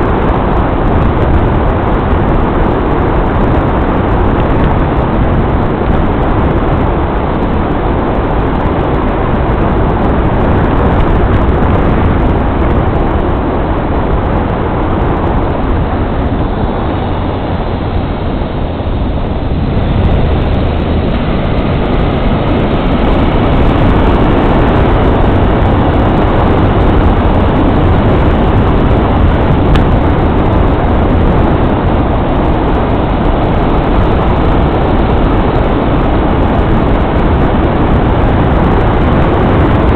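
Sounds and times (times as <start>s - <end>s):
vehicle road noise: 0.0s - 39.9s.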